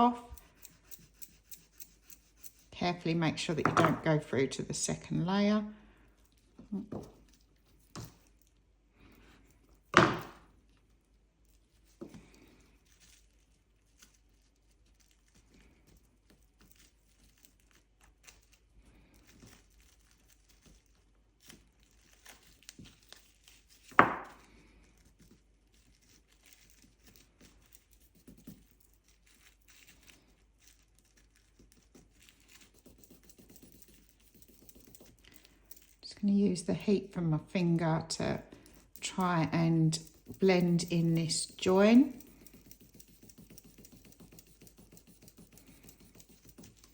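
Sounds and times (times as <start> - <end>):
tool knocking on work surface: 3.6 - 4.0, 10.0 - 10.4, 24.0 - 24.4.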